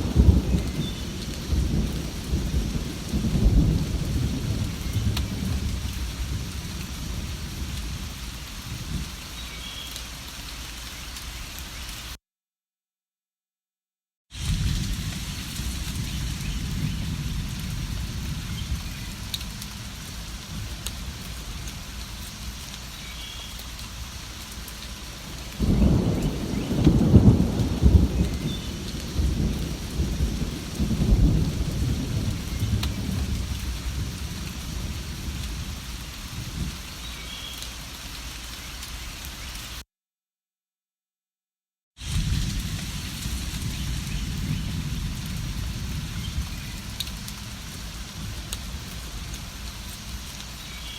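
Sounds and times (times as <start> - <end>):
rolling thunder: 0.0 - 9.1, 14.4 - 22.2, 25.2 - 36.8, 42.0 - 49.8
steady rain: 0.0 - 12.2, 14.3 - 39.8, 42.0 - 50.9.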